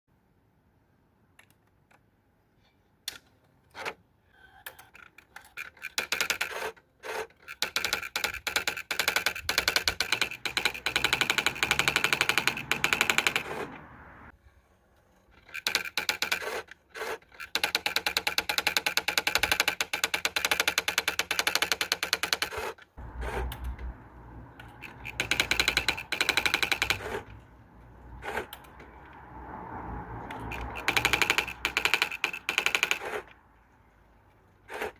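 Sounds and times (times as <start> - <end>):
typewriter print hammer strikes: 7.6 - 13.6, 25.0 - 27.2, 30.5 - 33.2.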